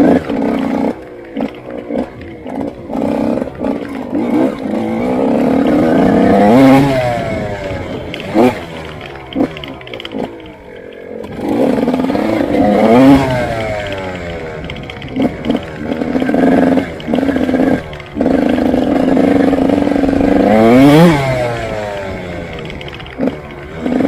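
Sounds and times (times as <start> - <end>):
motorcycle engine revving: 0.0 - 24.0.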